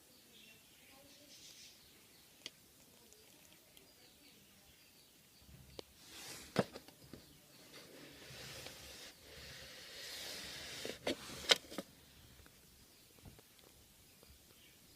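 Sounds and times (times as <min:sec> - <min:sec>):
rustling and scraping: 0:06.0 - 0:11.9.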